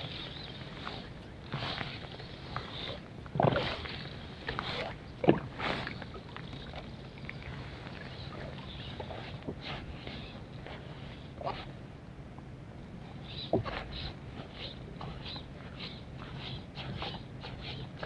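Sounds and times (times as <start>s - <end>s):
water sloshing and splashing: 0.0s - 11.8s.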